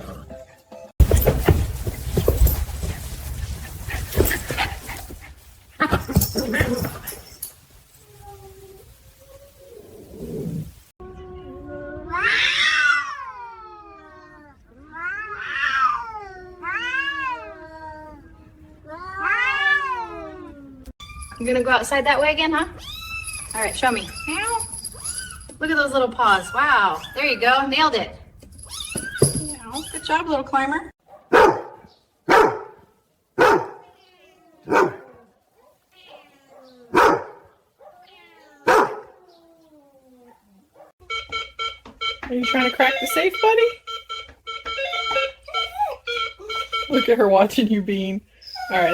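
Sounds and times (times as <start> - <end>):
cat yowling: 11.1 - 21.4, 35.9 - 37.1, 37.8 - 40.6
dog barking: 31.0 - 33.9, 34.6 - 38.0, 38.6 - 39.2.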